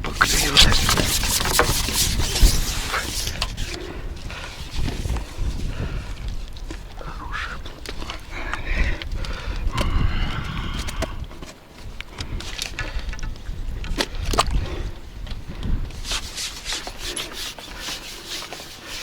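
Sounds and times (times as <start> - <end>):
rubbing and scraping: 0.0 - 5.9, 15.9 - 19.0
wind buffeting microphone: 0.0 - 17.5.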